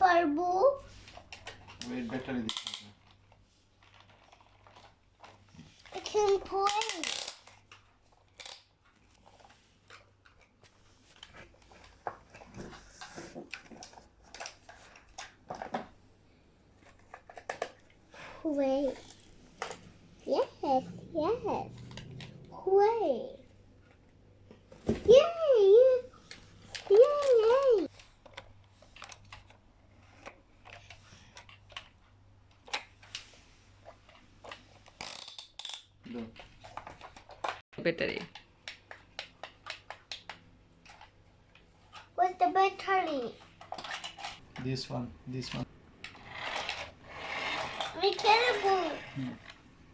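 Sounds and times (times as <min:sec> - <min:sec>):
toy excavator clicks and knocks: 0:06.6 - 0:07.8.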